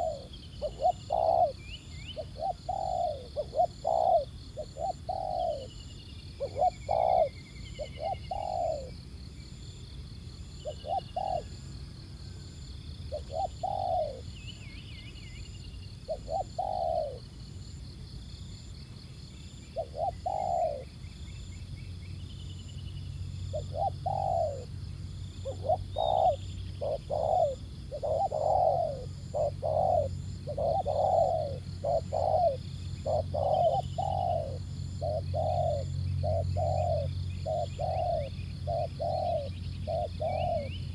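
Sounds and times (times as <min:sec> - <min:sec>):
doves cooing: 0:00.0 - 0:05.8, 0:06.4 - 0:09.0, 0:10.6 - 0:11.8, 0:13.1 - 0:14.4, 0:16.0 - 0:17.3, 0:19.8 - 0:20.9, 0:23.5 - 0:40.9.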